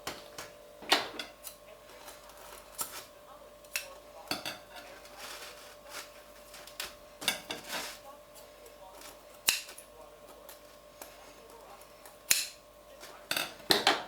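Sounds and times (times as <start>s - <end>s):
dishes and cutlery clinking: 4.3s - 8.0s, 13.2s - 14.0s.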